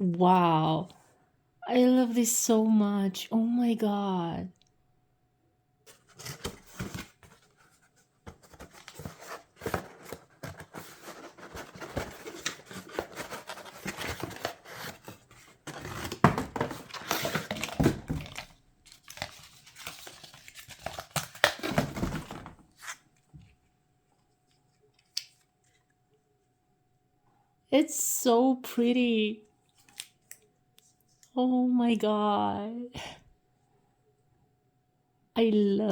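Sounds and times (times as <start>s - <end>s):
packaging tearing and rustling: 5.9s - 23.0s.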